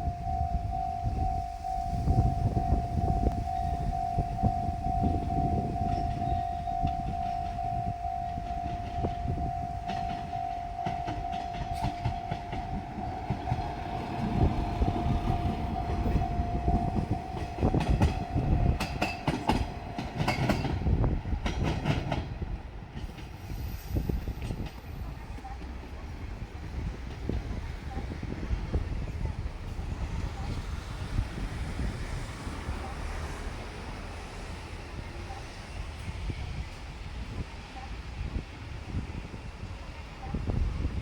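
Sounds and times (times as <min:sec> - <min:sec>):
level crossing alarm ringing: 0:00.0 - 0:20.6
train wheels clacking on rails: 0:00.0 - 0:37.8
diesel train rumbling past: 0:00.0 - 0:41.0.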